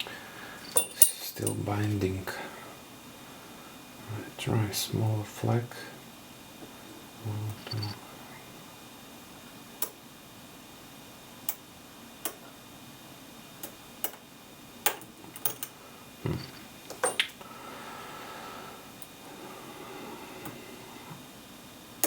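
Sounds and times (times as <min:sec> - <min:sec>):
lock pick clicking on pins: 0:00.6 - 0:01.6, 0:14.8 - 0:15.8.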